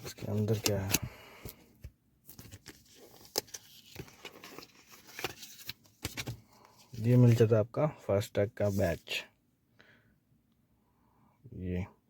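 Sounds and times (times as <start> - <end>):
packaging rustling and crinkling: 2.3 - 7.4.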